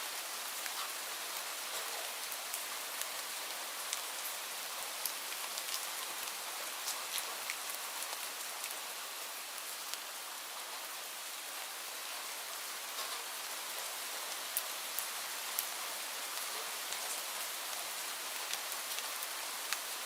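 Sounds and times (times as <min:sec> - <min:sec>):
light rain hissing: 0:00.0 - 0:20.0
raindrops tapping a surface: 0:12.9 - 0:20.0.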